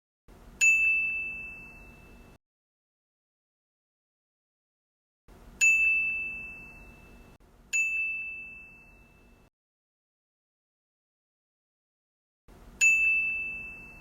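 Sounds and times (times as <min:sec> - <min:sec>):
small bell ringing: 0:00.6 - 0:02.4, 0:05.6 - 0:09.5, 0:12.8 - 0:14.0.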